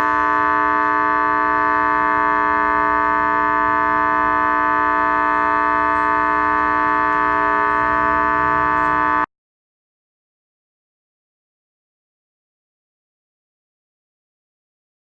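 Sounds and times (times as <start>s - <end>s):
loud shrill steady tone: 0.0s - 9.3s.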